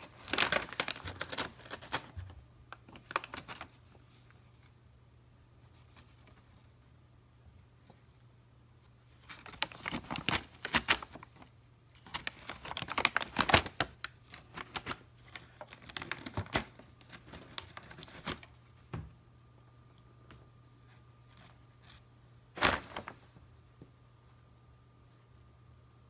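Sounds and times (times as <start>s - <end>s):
paper bag rustling and crinkling: 0.0s - 2.3s, 2.9s - 3.8s, 9.3s - 18.5s, 22.6s - 23.3s.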